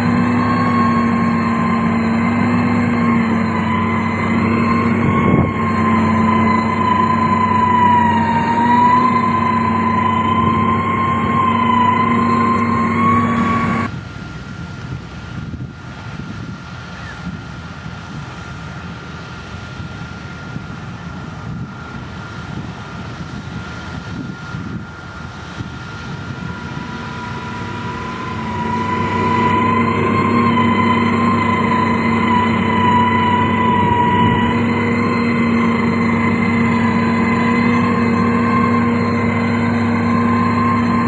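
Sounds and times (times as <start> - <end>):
heavy machinery engine running: 0.0 - 41.0
high steady whine: 0.0 - 41.0.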